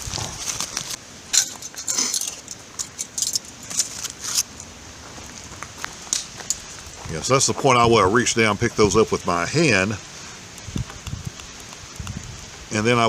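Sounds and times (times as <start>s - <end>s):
metallic clinks and scrapes: 1.3s - 4.6s.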